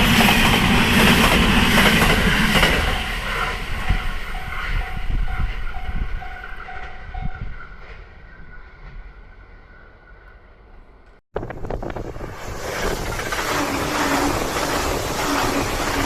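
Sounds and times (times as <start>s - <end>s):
electric train running: 0.0s - 7.3s, 11.7s - 16.0s
loud steady rushing noise: 11.4s - 16.0s.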